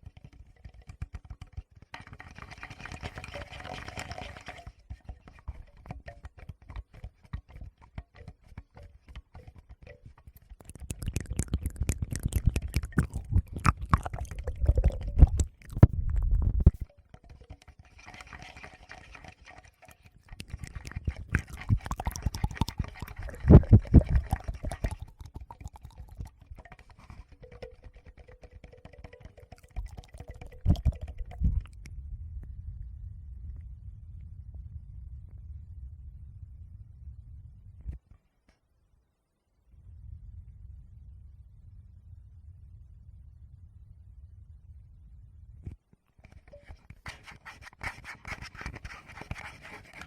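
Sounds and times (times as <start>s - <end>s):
fingers tapping on microphone: 5.4s - 17.7s
wet mouth sounds: 10.4s - 16.9s, 20.2s - 31.9s.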